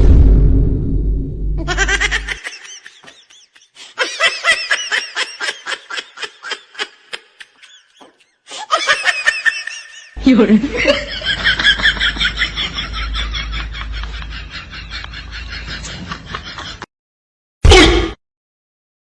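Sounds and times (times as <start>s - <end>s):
deep musical sting: 0.0s - 1.8s
high-pitched laughter: 1.6s - 10.2s.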